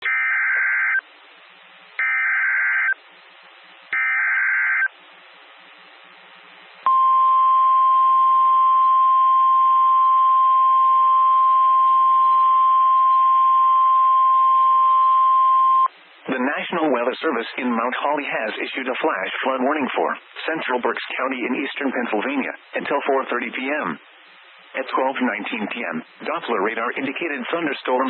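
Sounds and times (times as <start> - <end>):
faint radio hiss: 0.0 - 28.0
steady warning alarm tone: 3.9 - 4.9.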